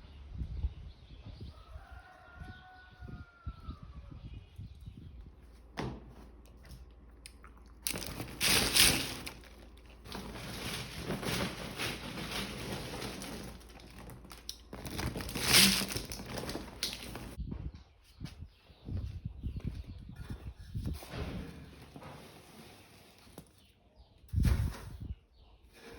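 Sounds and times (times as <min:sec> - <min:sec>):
dry material crinkling and crunching: 0:06.3 - 0:17.4.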